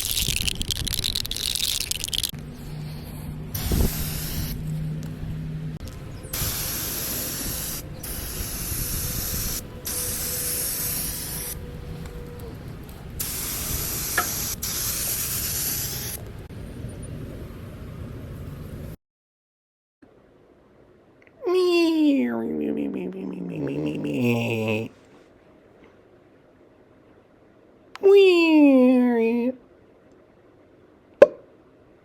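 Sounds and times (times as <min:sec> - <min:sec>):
hissing spray bursts: 0:03.5 - 0:04.7, 0:06.3 - 0:11.6, 0:13.2 - 0:16.2.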